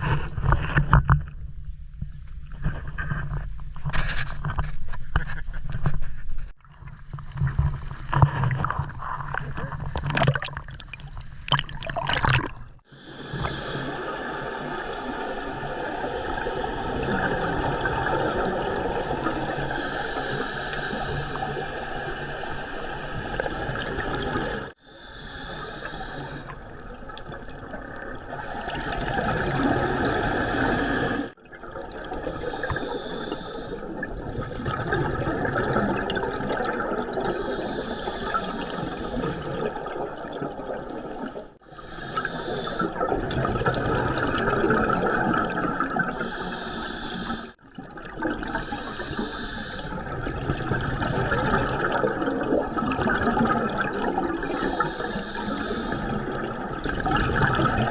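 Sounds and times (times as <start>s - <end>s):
bubbling exhalations: 8.2s - 21.6s, 26.2s - 57.9s
regulator hissing inhalations: 12.8s - 15.7s, 16.8s - 17.5s, 19.7s - 23.2s, 24.7s - 26.6s, 28.4s - 29.2s, 32.2s - 33.9s, 37.2s - 39.6s, 40.9s - 43.0s, 46.1s - 47.6s, 48.5s - 50.0s, 54.4s - 56.2s.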